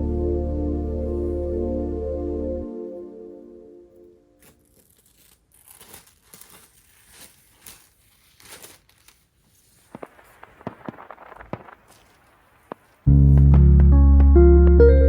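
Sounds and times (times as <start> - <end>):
packaging rustling and crinkling: 4.4 - 13.1.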